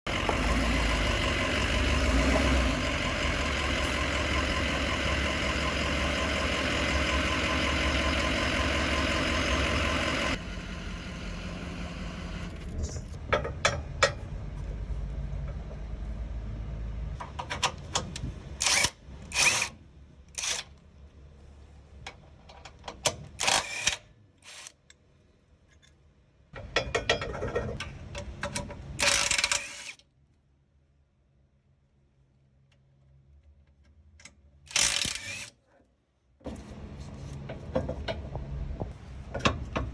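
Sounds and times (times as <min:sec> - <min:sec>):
vehicle engine running: 0:00.1 - 0:13.2.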